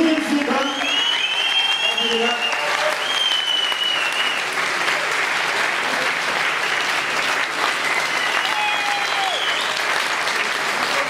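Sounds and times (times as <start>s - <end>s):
audience applauding: 0.0s - 11.0s
whistles: 0.6s - 4.5s, 6.6s - 7.1s, 8.0s - 9.9s.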